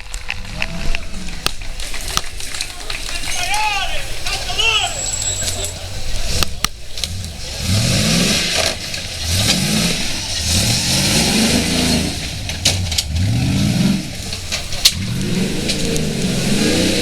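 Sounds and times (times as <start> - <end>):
car engine accelerating: 4.1 - 17.0.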